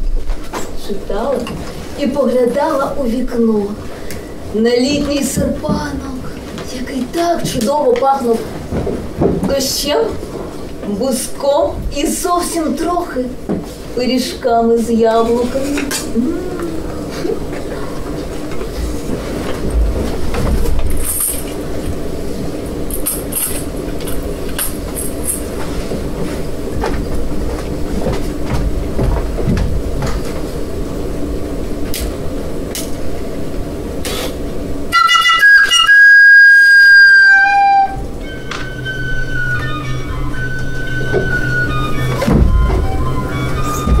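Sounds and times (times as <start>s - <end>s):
low hum tones: 0.0s - 44.0s
rumbling drone: 15.4s - 35.0s, 37.3s - 44.0s
high sustained whistle: 34.9s - 44.0s.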